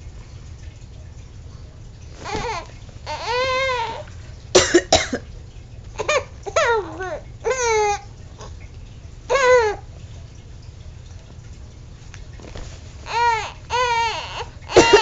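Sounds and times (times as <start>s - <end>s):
adult coughing: 4.6s - 5.3s, 14.7s - 15.0s
baby squealing laughs: 13.2s - 15.0s.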